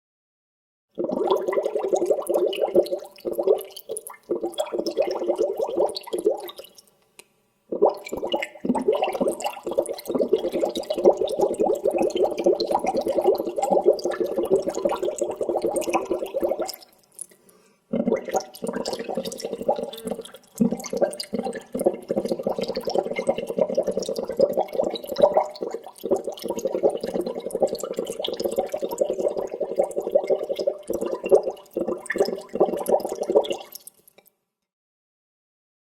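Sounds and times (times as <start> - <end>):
water bubbling and gurgling: 1.0 - 6.7, 7.7 - 16.9, 17.9 - 33.9.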